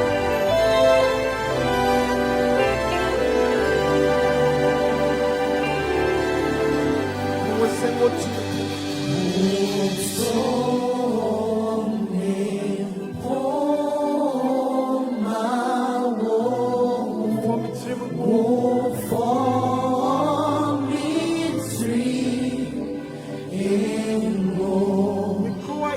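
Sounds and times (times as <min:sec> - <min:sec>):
low instrumental backing: 0:00.0 - 0:13.7
choir singing gospel song: 0:00.0 - 0:25.9.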